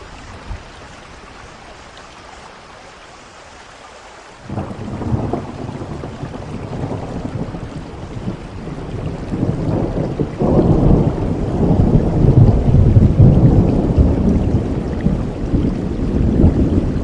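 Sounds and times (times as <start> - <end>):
steady rain: 0.0 - 17.0
thunder rolling: 4.5 - 17.0.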